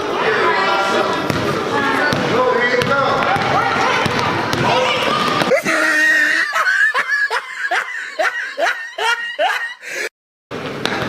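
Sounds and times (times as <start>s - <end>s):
person laughing: 5.5s - 10.1s.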